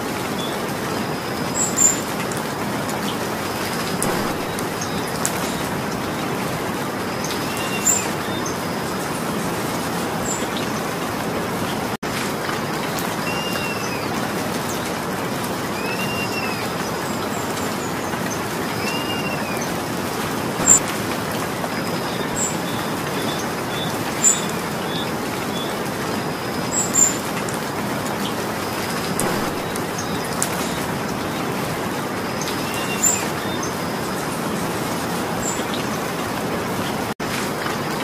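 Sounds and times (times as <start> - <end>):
steady rain hiss: 0.0 - 38.0
bird chirping: 4.0 - 5.8, 18.8 - 19.8, 20.6 - 20.8, 28.9 - 31.4.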